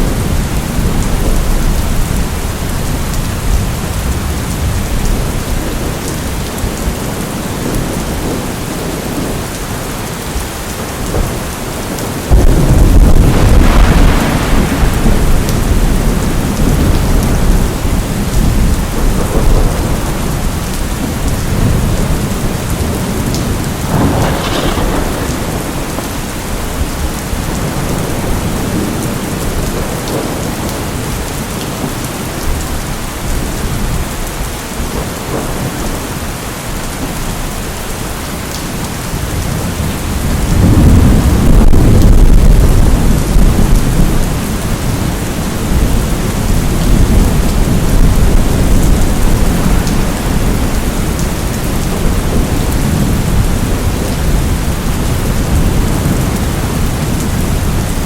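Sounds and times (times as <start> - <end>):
steady rain falling: 0.0 - 58.0
thunder rumbling: 0.0 - 58.0
short crack of thunder: 12.3 - 17.3, 23.9 - 28.0.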